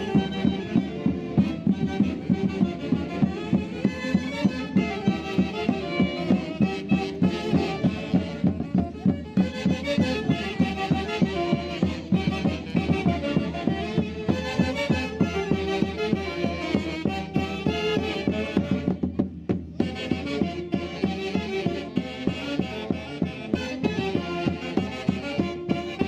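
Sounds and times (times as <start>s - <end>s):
live band festival music: 0.0s - 26.0s.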